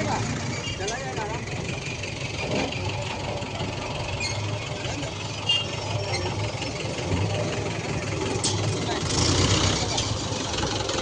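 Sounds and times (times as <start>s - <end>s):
heavy vehicle engine rumbling: 0.0s - 11.0s.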